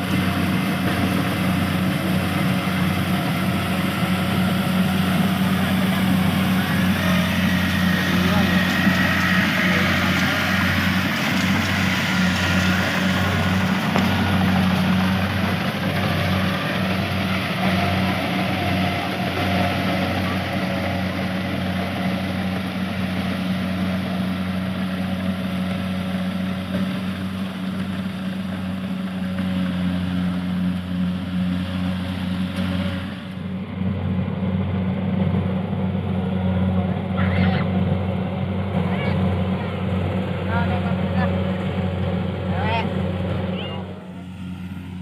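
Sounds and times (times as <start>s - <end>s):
harvesting machine engine running: 0.0s - 45.0s.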